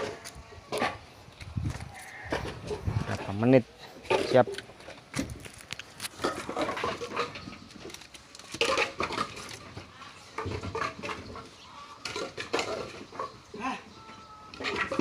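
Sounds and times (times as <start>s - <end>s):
wood pieces knocking and clattering: 4.1s - 13.4s, 14.6s - 15.0s.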